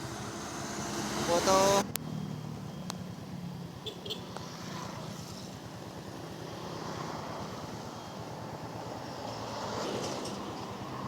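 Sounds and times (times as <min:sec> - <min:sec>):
vehicle engine running: 0:00.0 - 0:03.8
passing traffic: 0:00.0 - 0:11.0
road noise: 0:00.0 - 0:11.0.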